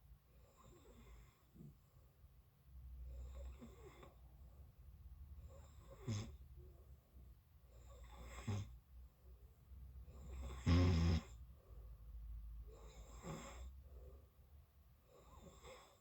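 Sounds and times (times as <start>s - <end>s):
person snoring: 10.4s - 11.3s.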